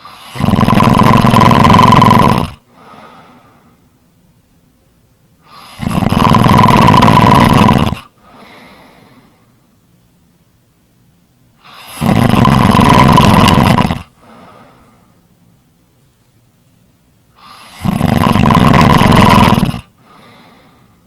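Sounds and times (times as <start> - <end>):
loud rattling snoring: 0.0 - 2.7, 5.5 - 8.1, 11.6 - 14.2, 17.4 - 19.9
faint breath out: 2.7 - 3.9, 8.2 - 9.6, 14.2 - 15.2, 20.0 - 21.0.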